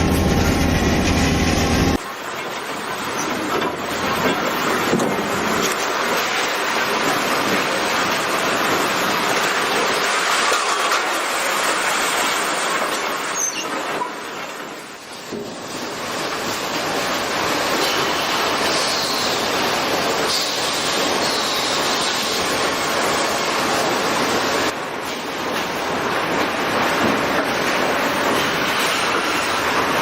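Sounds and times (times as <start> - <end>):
machine hum: 0.0 - 2.0
rushing grinding noise: 0.0 - 2.0.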